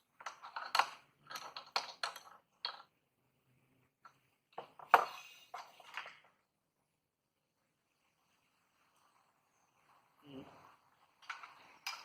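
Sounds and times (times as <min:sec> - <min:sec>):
metal parts and tools clinking: 0:00.2 - 0:02.9.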